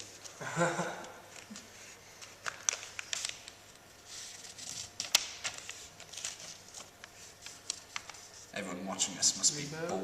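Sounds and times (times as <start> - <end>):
sharp paper crack: 1.3 - 3.6, 4.2 - 8.4
paper rustling and crackling: 1.3 - 8.6.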